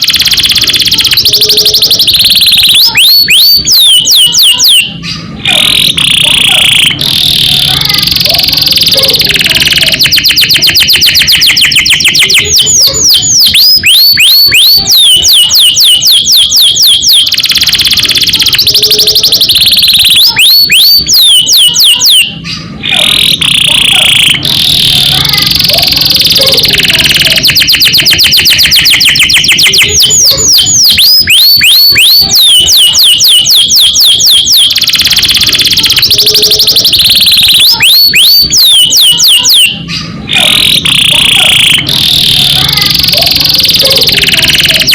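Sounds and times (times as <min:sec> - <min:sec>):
canary singing: 0:00.0 - 0:44.9.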